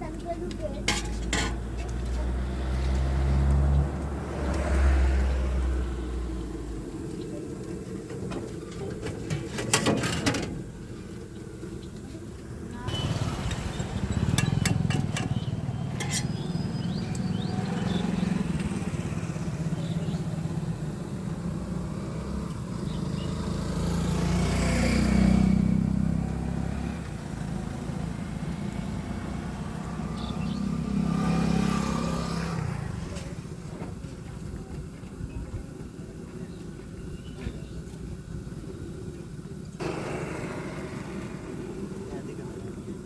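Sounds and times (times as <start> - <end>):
vehicles passing: 0.0 - 43.0.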